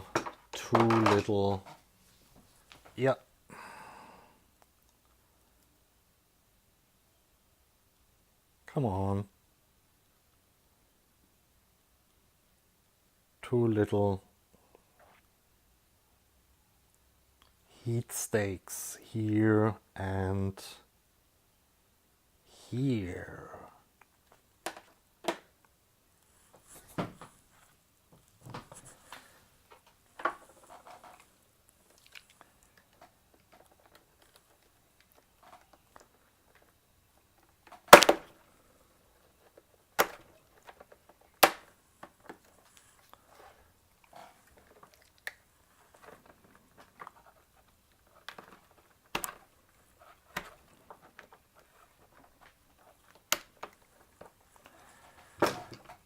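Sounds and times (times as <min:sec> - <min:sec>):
plastic clicks and cracks: 0:29.7 - 0:38.4, 0:39.4 - 0:43.2, 0:44.0 - 0:56.0.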